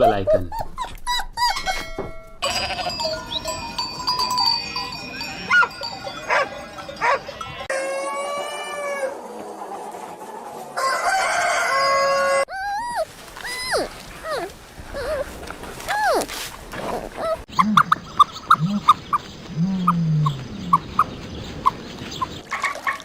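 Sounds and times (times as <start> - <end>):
chickens clucking: 5.6 - 12.4, 13.8 - 23.0
rooster crowing: 7.7 - 9.3, 10.8 - 12.5.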